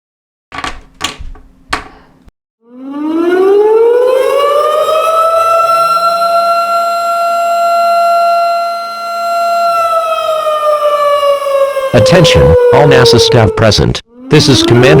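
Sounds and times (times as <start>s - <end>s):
short knocks: 0.5s - 2.1s
warning siren winding up: 2.7s - 15.0s.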